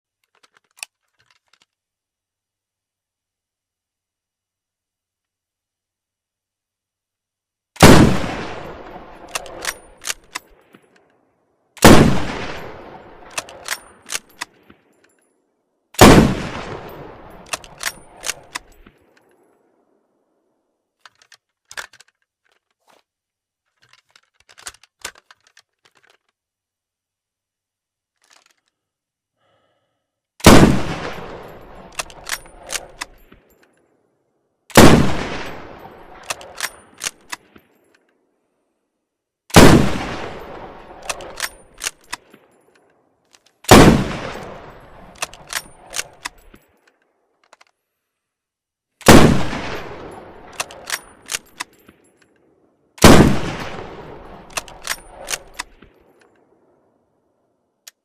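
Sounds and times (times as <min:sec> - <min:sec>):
rifle shots ringing out: 0:07.8 - 0:10.6, 0:11.8 - 0:14.4, 0:16.0 - 0:18.8, 0:30.4 - 0:33.2, 0:34.7 - 0:37.4, 0:39.5 - 0:42.4, 0:43.7 - 0:46.5, 0:49.0 - 0:51.8, 0:53.0 - 0:56.6
rifle bolt metallic clicks: 0:07.8 - 0:11.2, 0:11.8 - 0:15.2, 0:16.0 - 0:19.4, 0:21.0 - 0:23.0, 0:23.8 - 0:26.4, 0:30.4 - 0:33.8, 0:34.7 - 0:38.2, 0:39.5 - 0:47.8, 0:49.0 - 0:53.8, 0:54.4 - 0:56.5.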